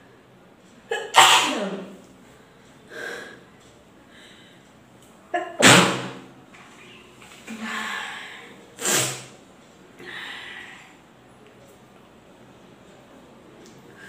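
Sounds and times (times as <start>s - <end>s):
woman sneezing: 0.9s - 1.8s.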